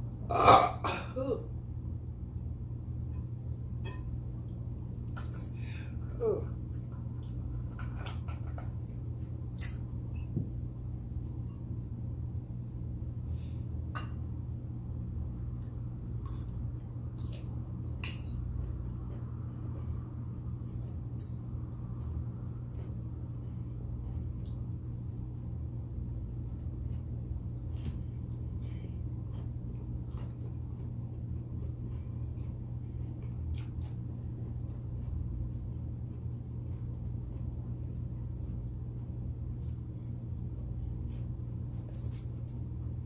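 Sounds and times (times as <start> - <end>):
steady low hum: 0.0 - 43.0
person chewing food: 15.3 - 25.6, 26.3 - 42.9.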